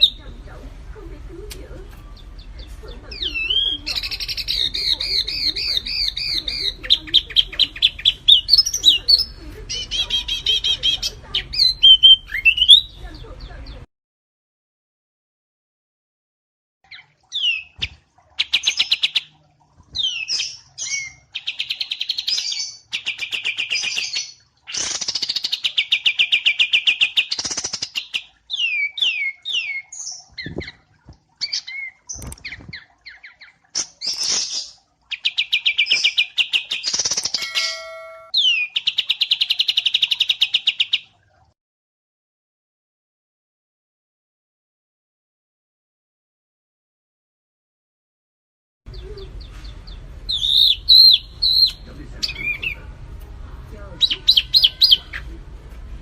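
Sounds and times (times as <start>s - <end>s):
songbirds trilling and whistling: 0.0s - 0.4s, 1.7s - 13.9s, 16.9s - 41.1s, 48.9s - 52.9s, 53.9s - 55.4s.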